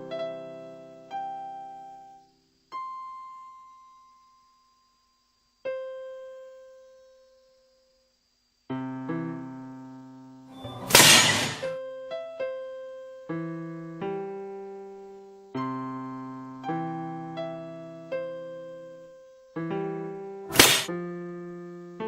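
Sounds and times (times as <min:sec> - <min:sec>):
loud noisy crash: 0:10.6 - 0:11.8, 0:20.5 - 0:20.9.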